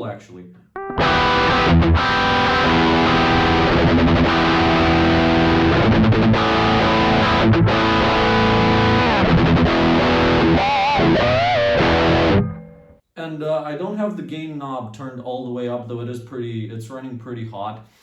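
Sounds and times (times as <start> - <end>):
distorted electric guitar chords: 0.7 - 13.0.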